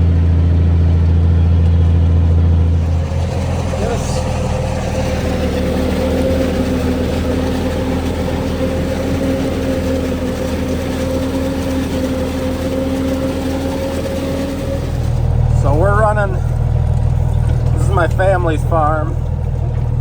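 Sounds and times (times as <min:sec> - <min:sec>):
heavy diesel engine running: 0:00.0 - 0:20.0
steady engine whine: 0:00.0 - 0:20.0.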